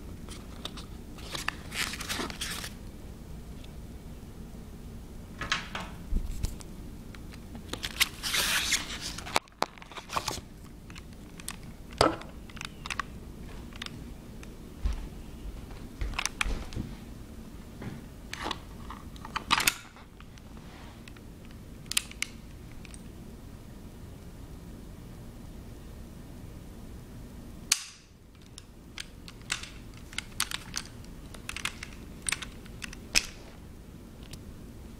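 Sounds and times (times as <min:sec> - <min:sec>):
packaging crinkly rustling: 0:00.3 - 0:02.8, 0:07.6 - 0:14.0.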